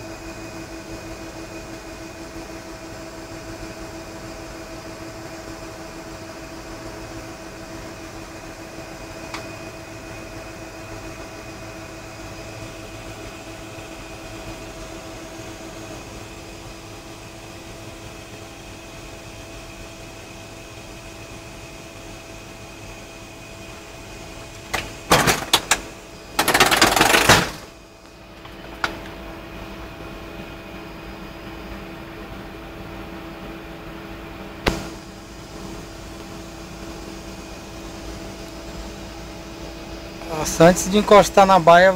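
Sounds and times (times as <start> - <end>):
aircraft interior hum: 0.0 - 41.9
loud burst of noise: 24.7 - 27.8, 34.6 - 36.6.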